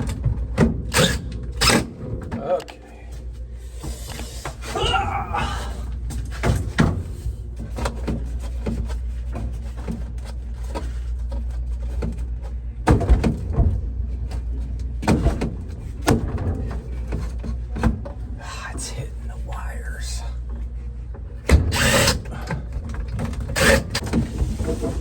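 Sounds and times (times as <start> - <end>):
steady low hum: 0.0 - 25.0
knocks and clicks of refrigerator parts: 12.8 - 18.2.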